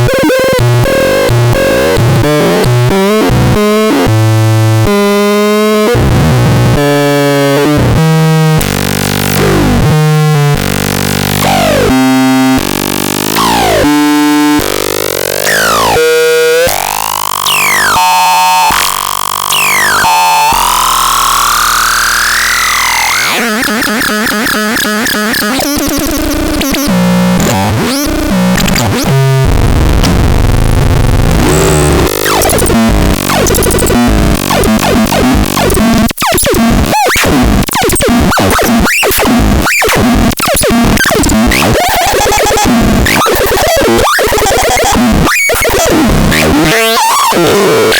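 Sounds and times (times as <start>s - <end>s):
synthesizer notes bending downward: 0.0s - 47.9s
buzzing noisy synthesizer texture: 30.7s - 36.8s
synthesizer rising sweep: 31.2s - 35.9s.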